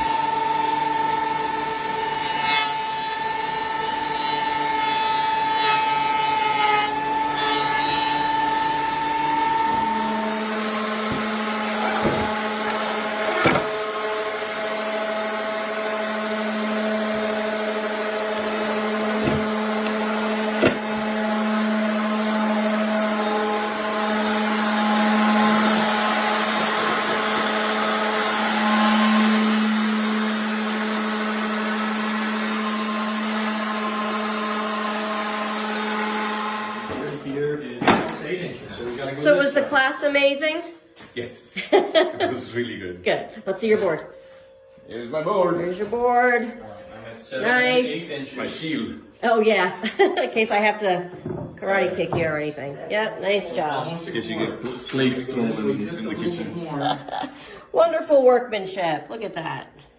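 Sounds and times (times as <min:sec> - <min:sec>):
woodworking machinery running: 0:00.0 - 0:40.1
sharp knocks: 0:11.9 - 0:12.4, 0:19.2 - 0:19.6, 0:20.6 - 0:21.0.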